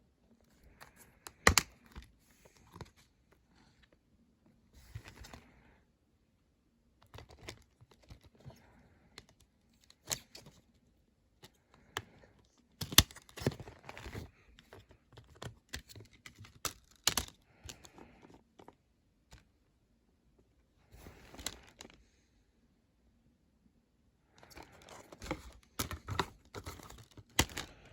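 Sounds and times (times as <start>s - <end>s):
plastic clicks and snaps: 0.8s - 2.1s.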